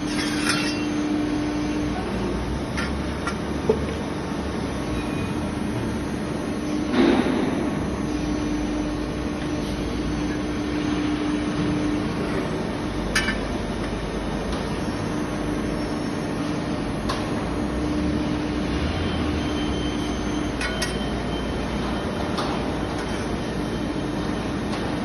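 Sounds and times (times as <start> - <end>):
press brake machine hum: 0.0 - 25.0.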